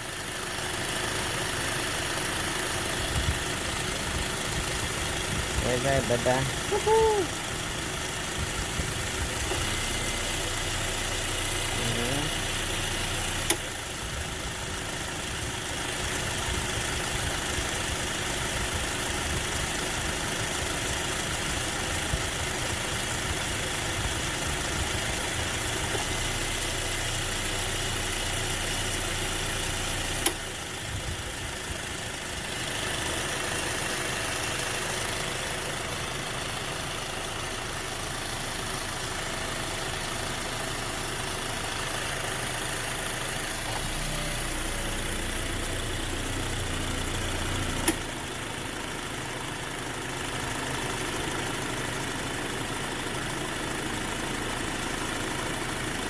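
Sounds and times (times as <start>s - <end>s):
car engine idling: 0.0s - 56.0s
sharp click: 47.8s - 48.0s.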